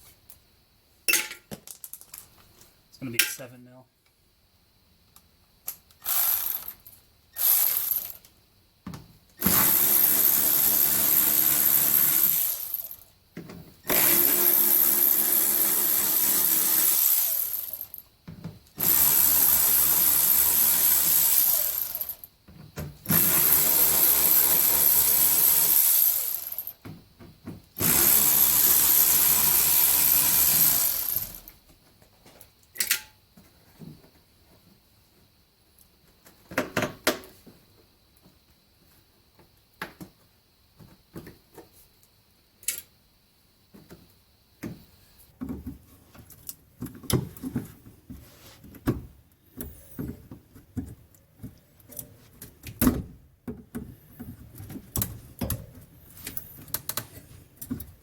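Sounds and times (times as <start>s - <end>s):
power drill running: 6.0s - 6.7s, 7.4s - 8.2s, 9.4s - 13.0s, 13.9s - 17.9s, 18.8s - 22.2s, 23.1s - 26.7s, 27.8s - 31.5s.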